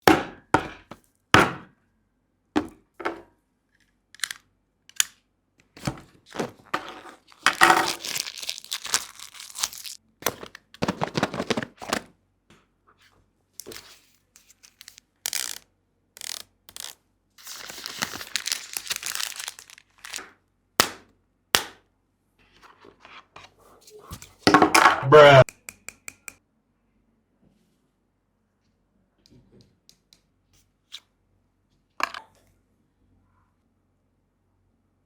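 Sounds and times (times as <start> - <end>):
clicks and knocks of packaging: 5.8 - 12.1, 17.6 - 21.0
packaging tearing and crinkling: 6.3 - 12.1, 13.6 - 15.6, 16.2 - 20.3.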